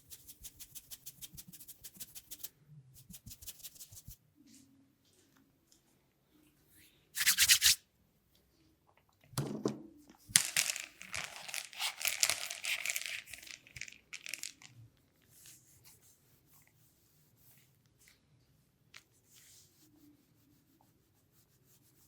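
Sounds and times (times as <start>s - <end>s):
hands rubbing through hair: 0.0s - 4.2s, 7.2s - 7.8s, 10.4s - 14.6s.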